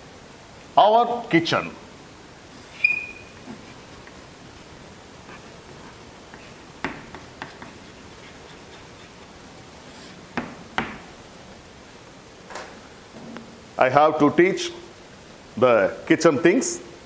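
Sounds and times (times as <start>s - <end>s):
room hiss: 0.0s - 17.0s.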